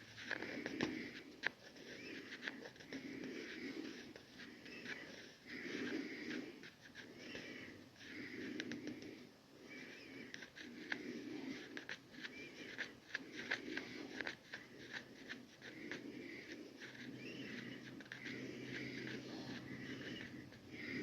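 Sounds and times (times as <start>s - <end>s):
wheezy breathing: 0.0s - 21.0s.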